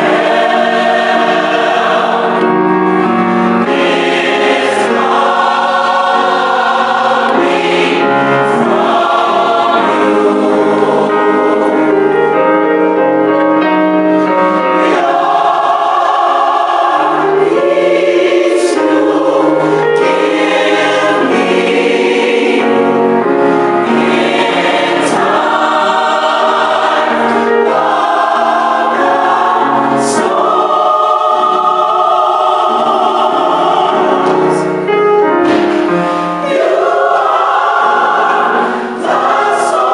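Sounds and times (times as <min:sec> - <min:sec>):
choir singing gospel song: 0:00.0 - 0:13.0, 0:14.2 - 0:39.9.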